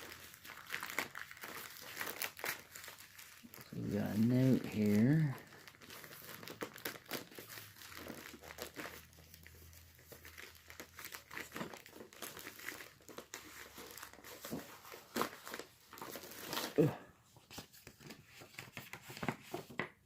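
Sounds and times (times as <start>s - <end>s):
packing material crinkling: 0.0s - 20.0s.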